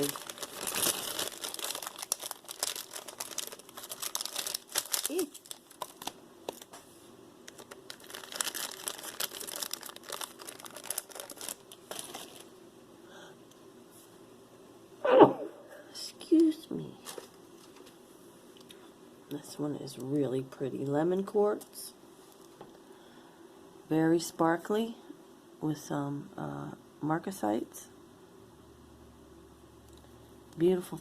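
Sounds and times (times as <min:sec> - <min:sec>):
plastic bags crinkling: 0:00.0 - 0:06.8, 0:07.4 - 0:12.5, 0:17.0 - 0:17.9.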